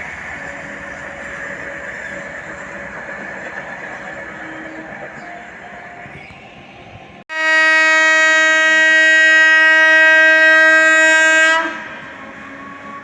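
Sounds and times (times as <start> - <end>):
passing train rumble: 0.0 - 13.0
locomotive air horn blast: 7.3 - 13.0.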